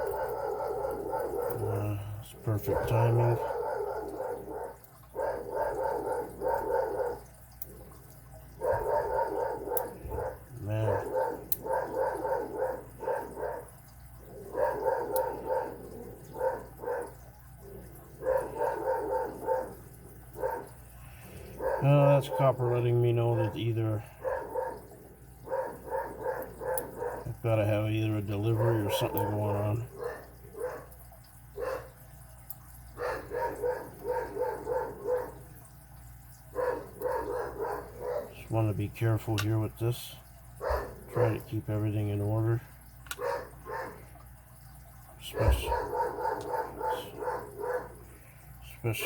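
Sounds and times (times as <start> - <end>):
dog barking: 0.0 - 7.3, 8.5 - 17.3, 18.1 - 20.8, 21.4 - 31.0, 31.6 - 32.0, 32.9 - 35.4, 36.5 - 38.5, 40.6 - 41.6, 43.2 - 44.1, 45.2 - 48.1.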